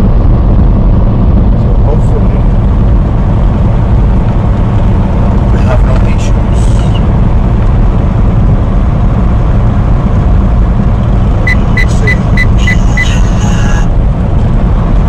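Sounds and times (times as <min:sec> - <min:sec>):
truck engine drone: 0:00.0 - 0:15.0
short high beeps: 0:11.5 - 0:13.5.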